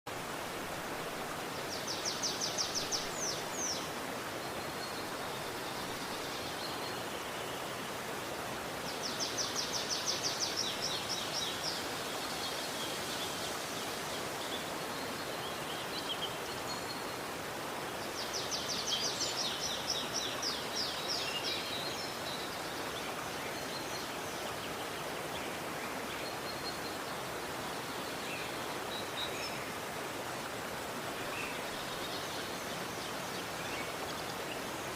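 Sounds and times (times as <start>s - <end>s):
river rushing: 0.1s - 34.9s.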